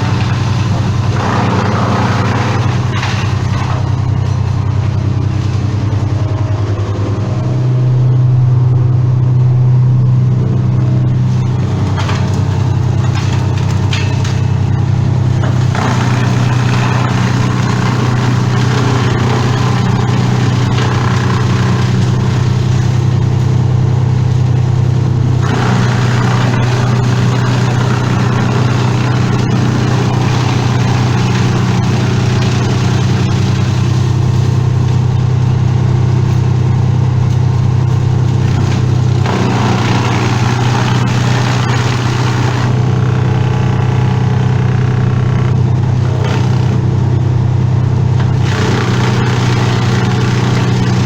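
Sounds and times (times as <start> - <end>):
bright rough noise: 0.0 - 51.0
engine running steadily: 0.0 - 51.0.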